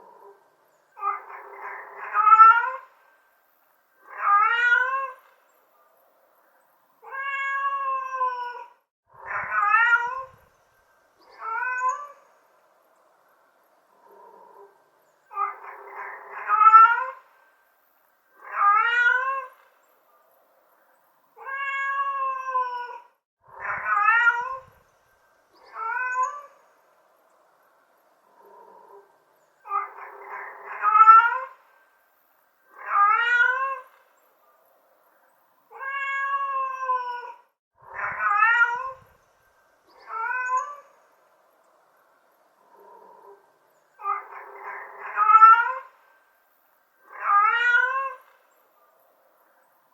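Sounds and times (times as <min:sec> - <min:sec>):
cat meowing: 0:01.0 - 0:02.9, 0:04.0 - 0:05.3, 0:07.0 - 0:10.5, 0:11.3 - 0:12.2, 0:15.3 - 0:17.2, 0:18.4 - 0:19.7, 0:21.4 - 0:24.8, 0:25.7 - 0:26.6, 0:29.7 - 0:31.6, 0:32.7 - 0:34.0, 0:35.7 - 0:39.1, 0:40.0 - 0:40.9, 0:44.0 - 0:46.0, 0:47.0 - 0:48.4.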